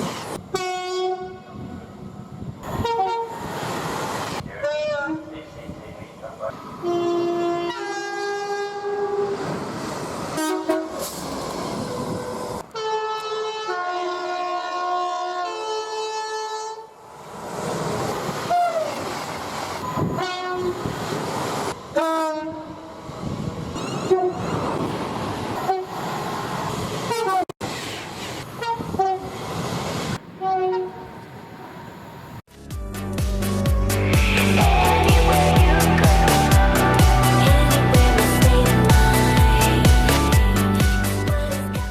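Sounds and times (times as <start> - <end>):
trains rushing past: 0.0 - 0.6, 1.3 - 13.5, 16.9 - 32.5, 33.3 - 41.5
two-tone train horns: 0.5 - 1.8, 2.6 - 3.5, 4.6 - 5.4, 6.8 - 9.4, 10.3 - 11.2, 12.6 - 17.0, 18.4 - 19.1, 19.8 - 20.9, 21.9 - 23.0, 23.8 - 24.6, 25.6 - 26.0, 27.1 - 27.5, 28.6 - 29.4, 30.4 - 31.2.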